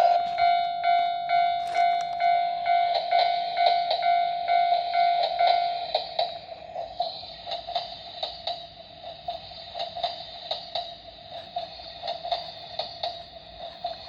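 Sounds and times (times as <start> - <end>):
electronic crossing bell ringing: 0.0 - 6.0.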